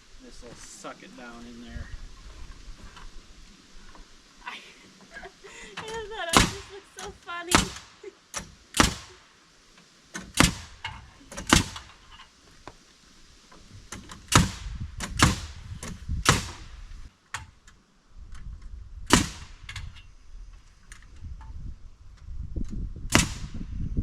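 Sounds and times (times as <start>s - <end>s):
hammer driving nails into wood: 7.6s - 9.1s, 10.2s - 12.0s.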